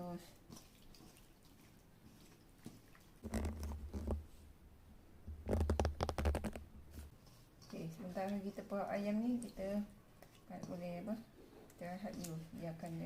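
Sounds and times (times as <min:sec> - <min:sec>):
hands squelching in marinade: 0:00.4 - 0:04.1.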